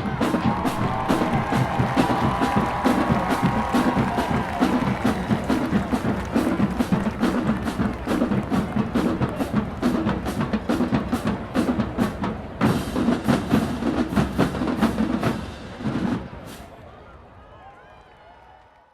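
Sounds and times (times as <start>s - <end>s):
bass drum beats: 0.0s - 11.5s
rapid snare drum strokes: 0.0s - 16.7s.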